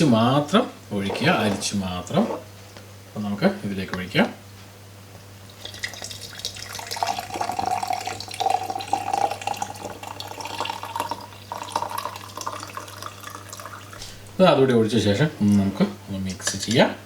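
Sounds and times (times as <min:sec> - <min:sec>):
liquid trickling into a jar: 0:05.4 - 0:14.4.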